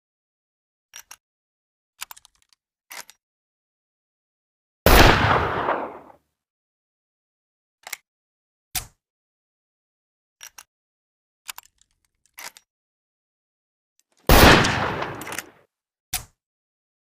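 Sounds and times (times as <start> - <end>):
handgun clicks: 4.9 - 6.1, 14.3 - 15.6
loud gunshot: 4.9 - 6.1, 14.3 - 15.5.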